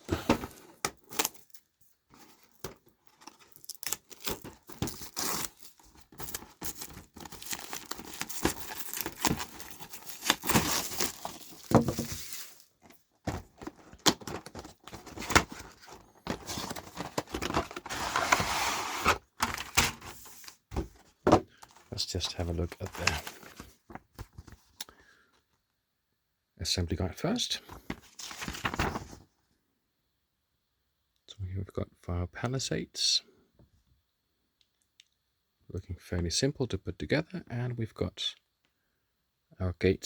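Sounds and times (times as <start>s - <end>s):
packaging rustling and clicks: 0.0s - 24.6s
cardboard tearing and crinkling: 0.2s - 1.6s, 3.1s - 12.7s, 13.4s - 20.5s, 22.8s - 23.7s, 28.2s - 29.1s.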